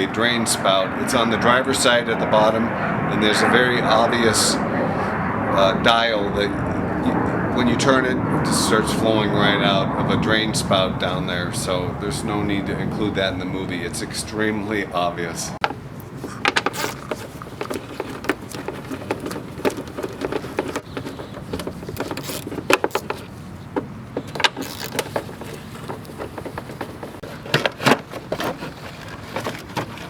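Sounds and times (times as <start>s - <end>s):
tools clinking and scraping: 15.6s - 30.0s.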